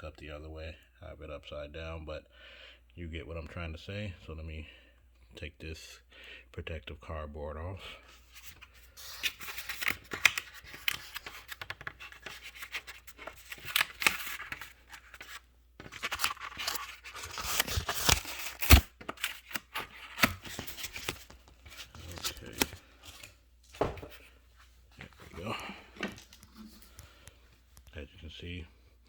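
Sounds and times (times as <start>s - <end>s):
cardboard ripping and rustling: 8.4s - 24.3s.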